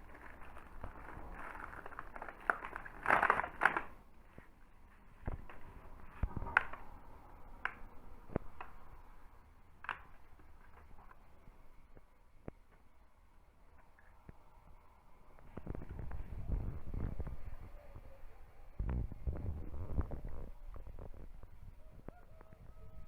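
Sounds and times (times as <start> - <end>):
snacks crunching: 0.0 - 3.9.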